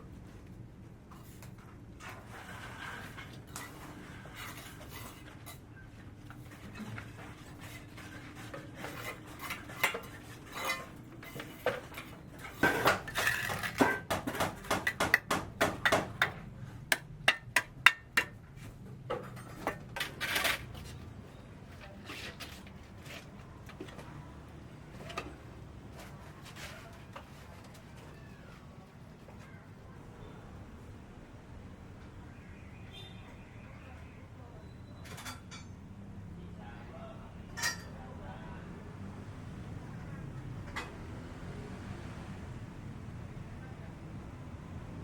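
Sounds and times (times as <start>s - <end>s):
hard objects clinking and knocking: 6.7s - 18.4s.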